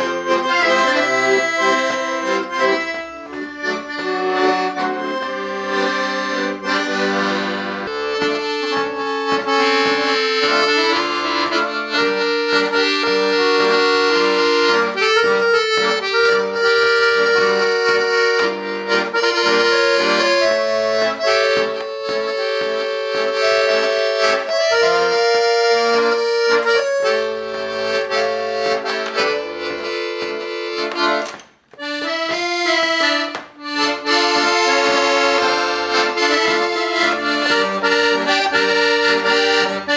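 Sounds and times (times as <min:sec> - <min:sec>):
accordion melody: 0:00.0 - 0:39.9.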